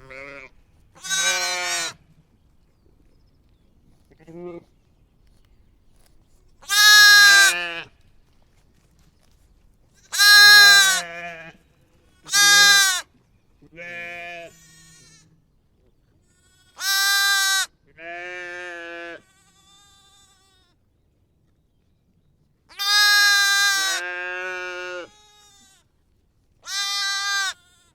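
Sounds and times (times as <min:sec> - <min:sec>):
sheep bleating: 0:00.0 - 0:02.0, 0:06.6 - 0:07.9, 0:10.1 - 0:13.1, 0:13.7 - 0:15.3, 0:16.3 - 0:20.7, 0:22.7 - 0:25.9, 0:26.6 - 0:27.9.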